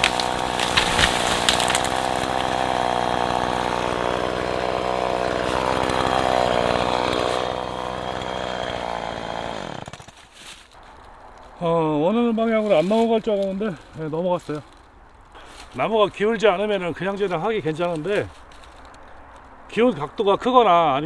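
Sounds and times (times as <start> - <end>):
chainsaw running at high speed: 0.0 - 10.1
wood cracking: 0.0 - 11.6, 12.6 - 19.7.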